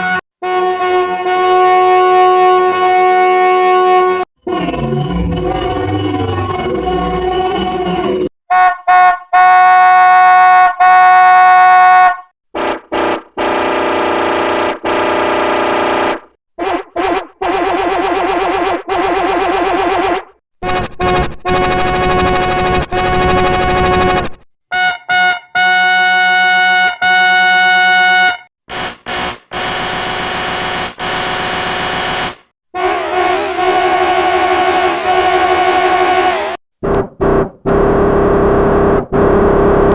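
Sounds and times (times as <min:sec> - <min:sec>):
electronic car horn honks: 0:00.0 - 0:04.2, 0:20.6 - 0:28.4, 0:29.9 - 0:36.6.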